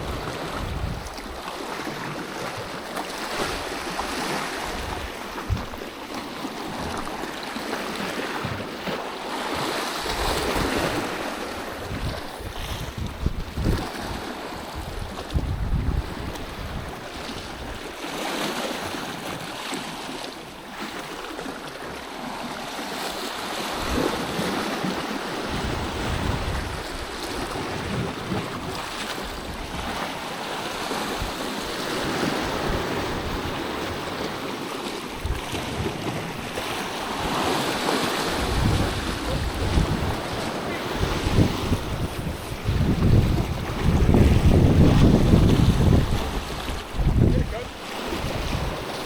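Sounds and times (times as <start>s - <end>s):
wind buffeting microphone: 0.0s - 1.4s, 4.7s - 5.8s, 11.8s - 17.8s, 25.5s - 30.0s, 35.2s - 49.0s
sea waves washing against rocks: 0.0s - 49.0s.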